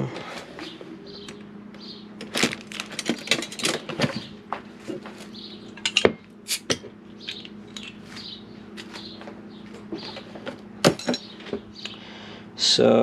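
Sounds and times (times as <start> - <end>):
steady low hum: 0.0 - 13.0
dishes and utensils clinking: 5.8 - 6.8, 10.9 - 11.6.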